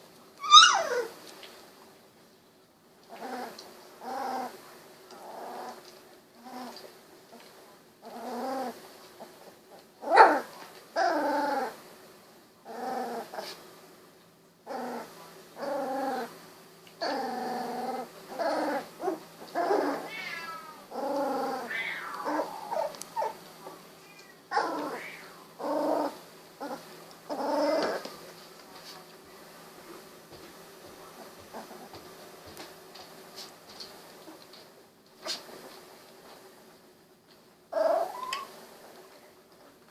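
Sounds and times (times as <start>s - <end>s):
puppy yelping: 0.4s - 1.1s, 18.3s - 23.4s, 24.5s - 25.3s, 37.7s - 38.5s
puppies crying and whining: 0.4s - 1.2s, 18.3s - 23.4s, 24.0s - 28.1s, 37.7s - 38.5s.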